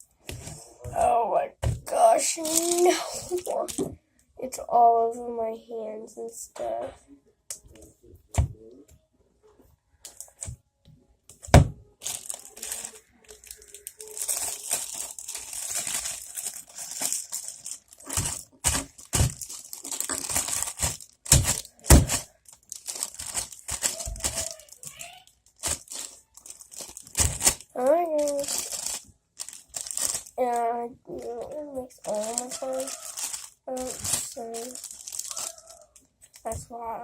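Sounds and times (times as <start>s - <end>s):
slime squishing and crackling: 0.3s - 3.8s, 11.4s - 30.7s, 31.3s - 36.6s.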